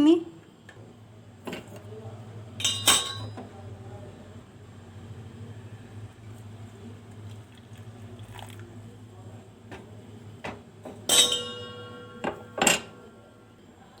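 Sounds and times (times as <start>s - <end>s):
low steady hum: 0.0s - 14.0s
kitchen utensils clinking: 2.6s - 3.5s, 9.7s - 13.1s.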